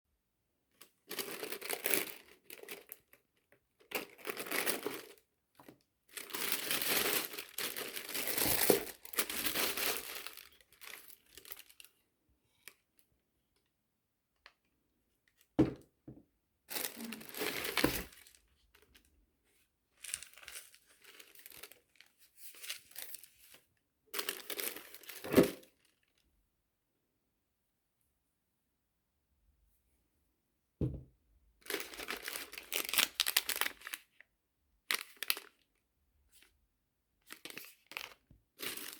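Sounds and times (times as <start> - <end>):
paper and plastic crinkling: 1.1 - 3.2, 3.9 - 11.9, 16.7 - 19.0, 20.0 - 26.1, 31.7 - 34.1, 34.9 - 35.6, 37.3 - 38.9
items thumping down: 15.6 - 16.2.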